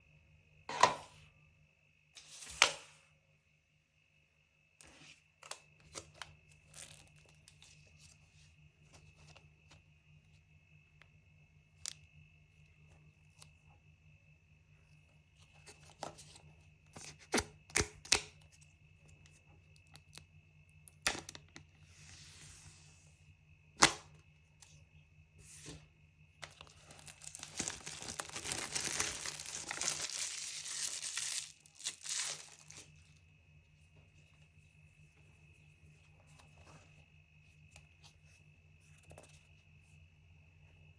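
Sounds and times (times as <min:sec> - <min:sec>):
wrapping crinkling: 0:06.7 - 0:07.6, 0:26.5 - 0:32.9
packaging tearing: 0:26.8 - 0:32.8.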